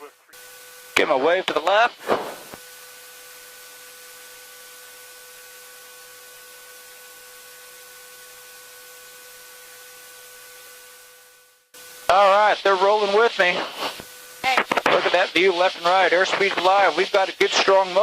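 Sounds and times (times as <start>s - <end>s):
intercom channel hiss: 0.0s - 2.6s, 11.8s - 18.0s.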